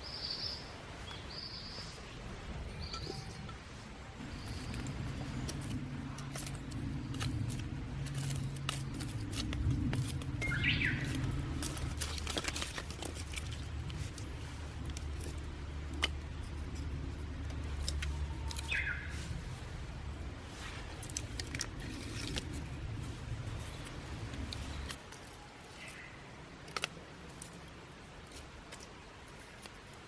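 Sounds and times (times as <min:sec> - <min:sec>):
low steady rumble: 0:02.0 - 0:25.1
campfire crackling and snapping: 0:04.2 - 0:30.0
bird calling: 0:10.4 - 0:11.4, 0:18.1 - 0:19.4.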